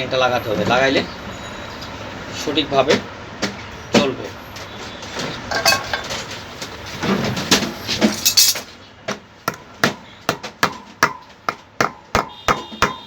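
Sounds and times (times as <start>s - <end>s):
handling noise: 5.2s - 8.7s
hammer striking metal: 5.5s - 6.1s, 9.5s - 13.0s.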